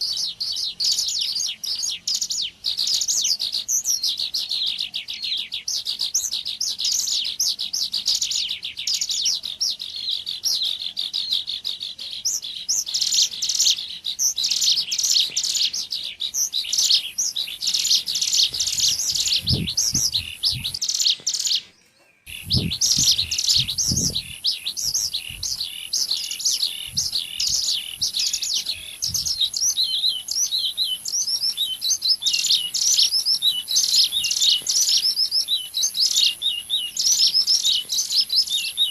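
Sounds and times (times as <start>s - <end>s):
high-pitched bird chirping and trilling: 0.0s - 38.9s
low thumps: 22.3s - 25.6s.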